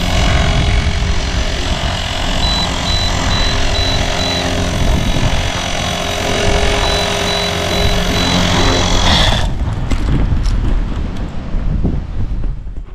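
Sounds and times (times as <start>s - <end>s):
gear grinding: 0.0s - 9.6s
rc helicopter whine: 0.0s - 9.6s.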